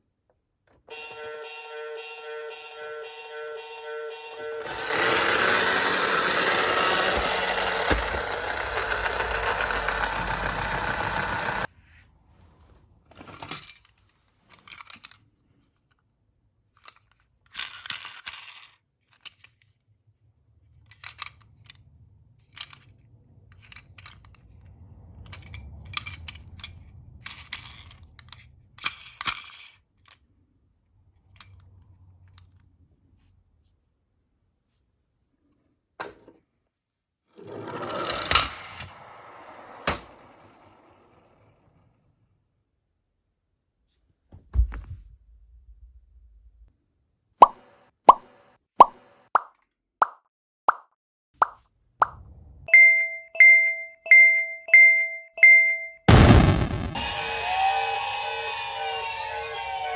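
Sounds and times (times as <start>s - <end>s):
toy cars rattling and clicking: 4.6s - 11.7s, 13.2s - 16.0s, 16.6s - 19.9s, 20.7s - 30.4s, 31.2s - 32.7s, 37.3s - 42.0s
faint low rumble: 44.4s - 46.8s, 51.8s - 52.7s
loud dense noise: 56.1s - 57.7s.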